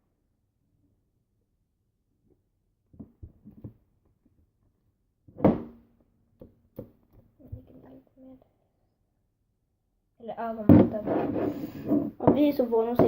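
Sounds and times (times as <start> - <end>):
loud thump: 5.4 - 5.9, 10.7 - 11.2.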